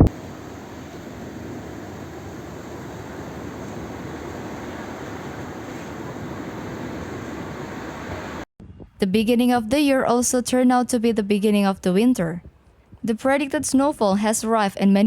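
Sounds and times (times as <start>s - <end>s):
strong wind blowing: 0.0s - 9.2s.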